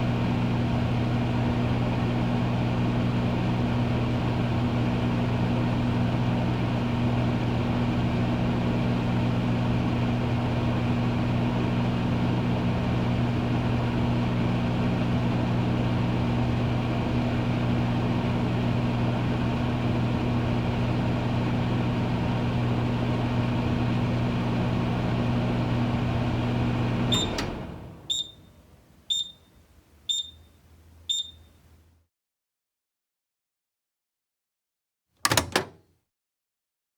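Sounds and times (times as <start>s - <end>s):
microwave oven humming: 0.0s - 32.0s, 35.2s - 35.8s
short high beeps: 29.1s - 29.5s, 30.1s - 30.5s, 31.1s - 31.5s.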